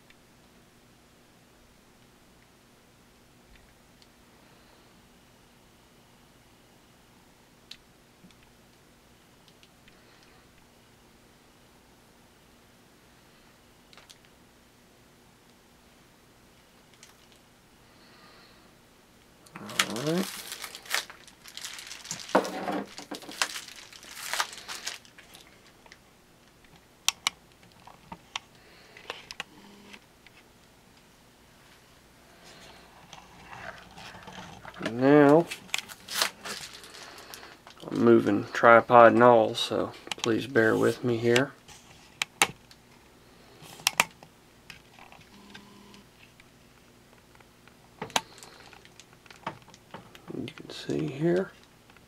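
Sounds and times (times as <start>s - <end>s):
metal parts scraping and rattling: 19.6s - 25.6s, 33.4s - 34.9s.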